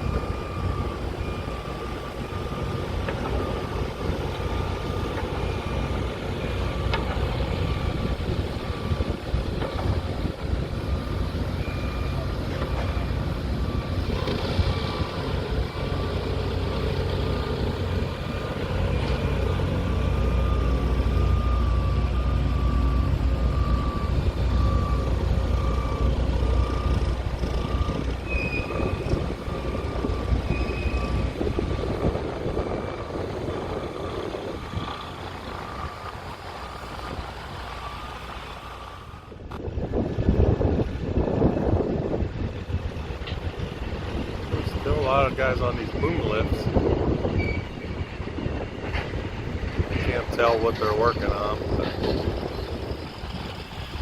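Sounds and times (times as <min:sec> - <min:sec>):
reversing alarm beeping: 0:00.0 - 0:39.5
heavy machinery engine rumble: 0:00.0 - 0:54.0.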